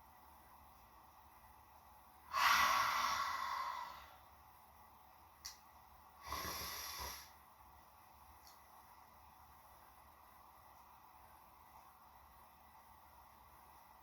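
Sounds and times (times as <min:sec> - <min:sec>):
person snoring: 0:02.3 - 0:04.1.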